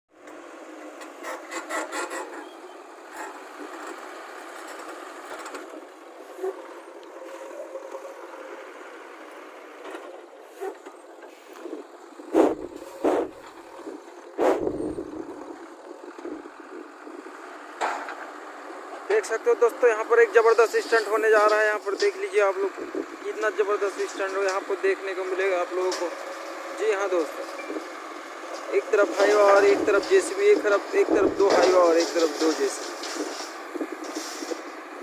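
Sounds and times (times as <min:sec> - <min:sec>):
heavy machinery working: 0:00.3 - 0:35.0
scraping and rattling: 0:09.8 - 0:15.6, 0:28.5 - 0:34.8.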